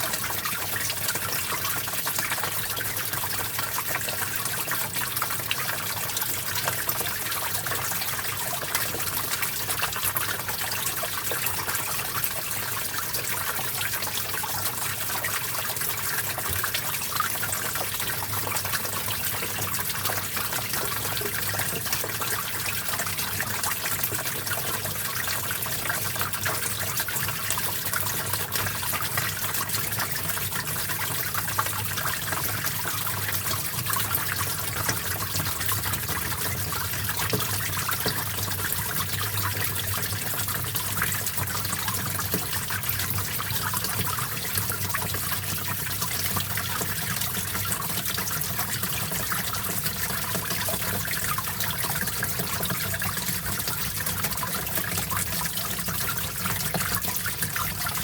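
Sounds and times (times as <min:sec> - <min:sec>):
stream trickling over rocks: 0:00.0 - 0:58.0.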